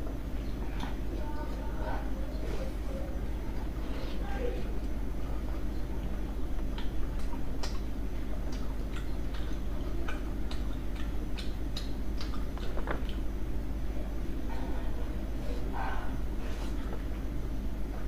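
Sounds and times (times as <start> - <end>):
steady low hum: 0.0 - 18.0
wet chewing mouth clicks: 4.8 - 13.3.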